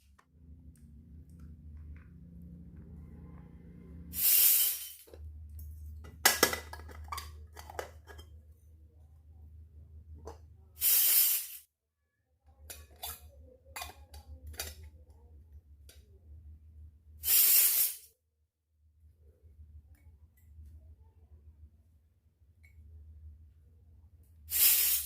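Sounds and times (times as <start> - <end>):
low steady hum: 0.0 - 4.2, 5.0 - 10.8, 12.0 - 17.2, 18.7 - 24.5
loud hiss bursts: 4.2 - 5.0, 10.8 - 11.6, 17.2 - 18.1, 24.5 - 25.0
toy kitchen pieces clicking: 6.0 - 8.3, 12.7 - 15.0.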